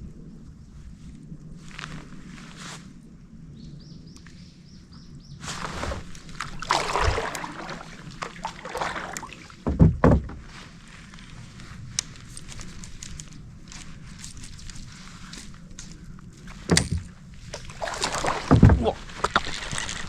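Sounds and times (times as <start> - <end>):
water splashing around kayak: 5.4 - 12.2, 16.4 - 20.0
dull knocks: 9.6 - 10.5, 18.3 - 19.0.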